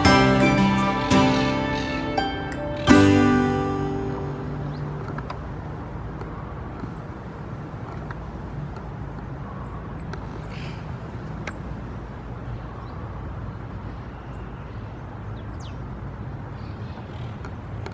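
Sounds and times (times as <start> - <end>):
bird chirps: 1.8 - 5.1.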